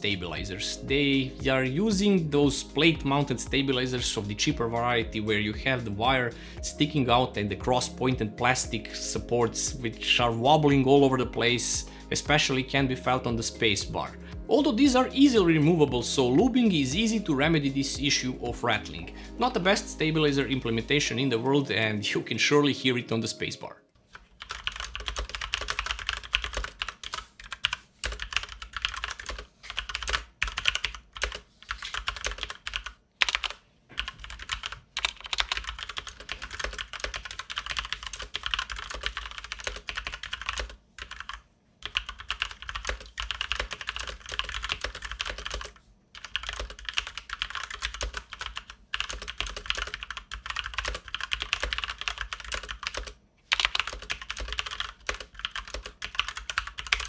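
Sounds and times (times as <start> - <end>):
mechanical keyboard typing: 24.1 - 57.0.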